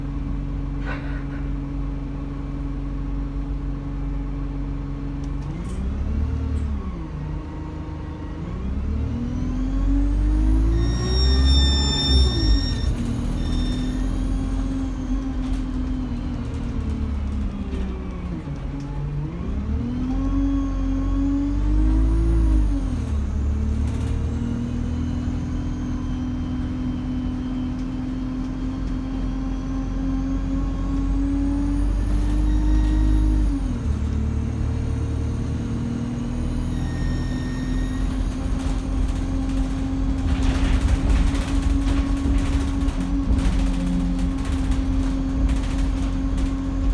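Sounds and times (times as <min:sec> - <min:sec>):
diesel bus engine running: 0:00.0 - 0:46.9
turbocharger whistle: 0:10.5 - 0:14.1.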